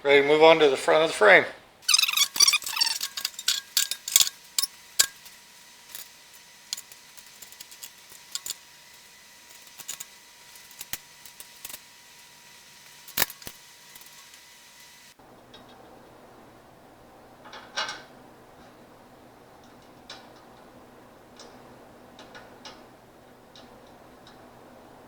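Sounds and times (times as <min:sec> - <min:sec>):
metal tools clicking and clinking: 0:01.8 - 0:11.8, 0:13.1 - 0:14.2.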